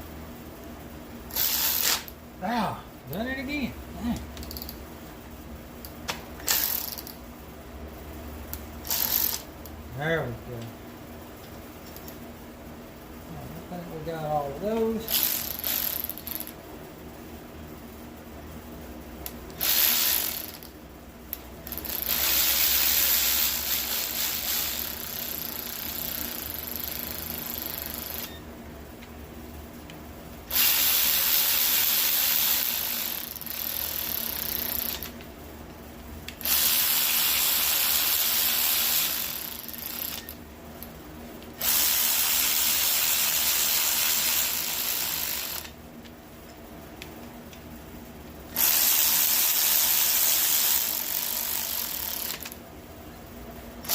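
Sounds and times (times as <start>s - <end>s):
cordless drill running: 1.3s - 2.1s, 8.9s - 9.4s, 19.6s - 20.7s, 21.7s - 28.4s, 30.5s - 35.1s, 36.4s - 40.4s, 41.6s - 45.8s, 48.6s - 52.6s.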